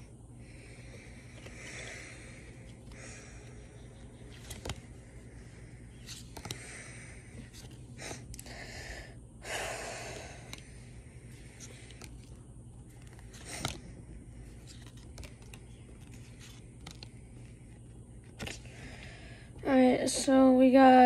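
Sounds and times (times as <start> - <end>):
card rustle: 2.4 - 8.5, 11.3 - 19.1
cards sliding and clicking: 2.4 - 8.5, 10.2 - 19.1.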